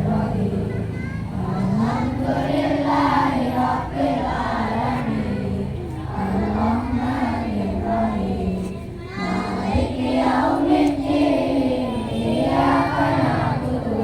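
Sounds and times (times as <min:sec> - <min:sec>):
children singing in unison: 0:00.0 - 0:14.0.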